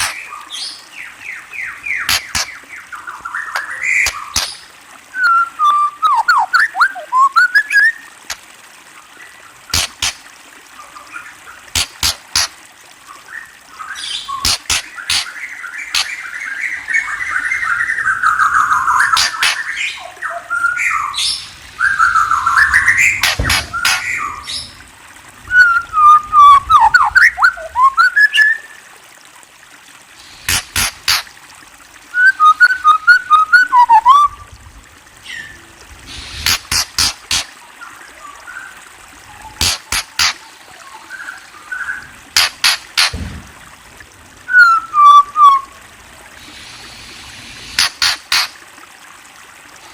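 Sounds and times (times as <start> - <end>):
songbird whistling and clicking: 0.0 - 0.2, 2.0 - 2.6, 3.4 - 4.6, 5.2 - 8.4, 9.7 - 10.2, 11.8 - 12.6, 14.2 - 16.3, 19.0 - 19.8, 21.9 - 24.7, 25.5 - 28.6, 30.5 - 31.3, 32.2 - 34.3, 36.4 - 37.5, 39.6 - 40.4, 41.8 - 43.2, 44.5 - 45.7, 47.8 - 48.5
songbird harsh call notes: 13.8 - 24.9, 47.7 - 48.5.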